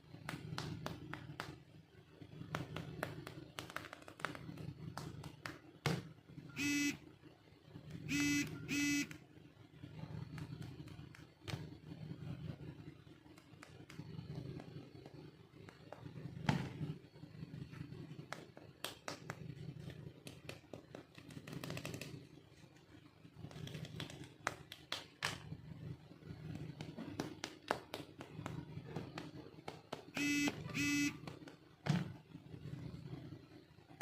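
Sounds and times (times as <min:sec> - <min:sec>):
short electronic beeps: 0:06.6 - 0:07.0, 0:08.1 - 0:09.1, 0:30.2 - 0:31.2.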